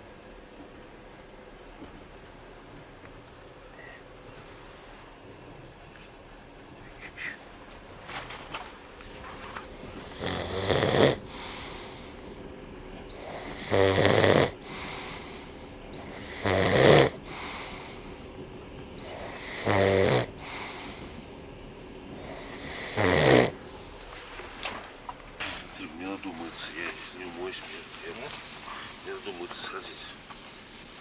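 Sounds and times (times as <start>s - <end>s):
hissing breath out: 9.4s - 24.6s
person snoring: 9.8s - 12.5s, 13.1s - 21.5s, 22.2s - 24.1s.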